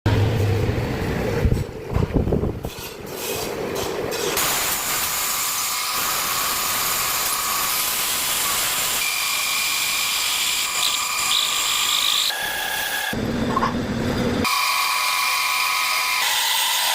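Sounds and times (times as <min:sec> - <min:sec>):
tool cutting spinning wood: 0:04.4 - 0:16.9.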